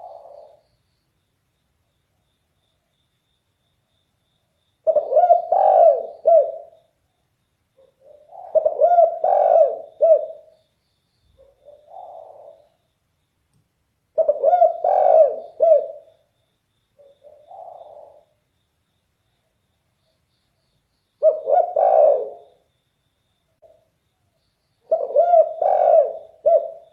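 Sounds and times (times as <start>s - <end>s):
dove cooing: 0.0s - 0.6s, 4.8s - 6.8s, 7.8s - 10.5s, 11.4s - 12.8s, 14.2s - 16.2s, 17.0s - 18.4s, 21.2s - 22.6s, 24.9s - 26.9s.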